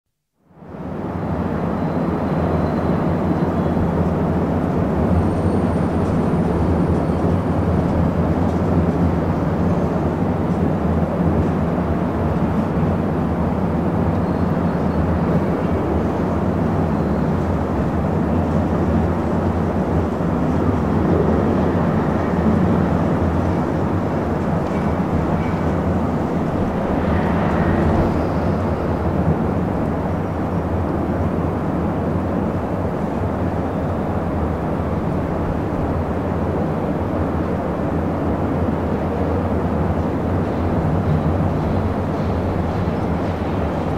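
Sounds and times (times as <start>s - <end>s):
faint brake squeal: 1.6s - 3.9s, 5.0s - 7.8s, 14.1s - 15.2s, 24.8s - 29.1s
distant traffic rumble: 3.5s - 43.9s.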